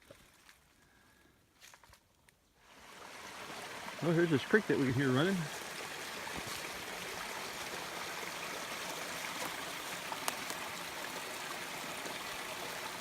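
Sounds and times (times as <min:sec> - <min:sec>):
creek flowing over rocks: 0:02.6 - 0:13.0.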